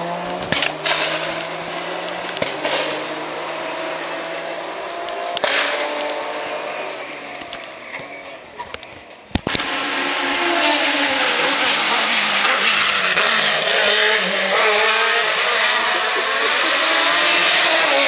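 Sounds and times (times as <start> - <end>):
race car engine revving past: 0.0 - 8.3, 9.6 - 18.0.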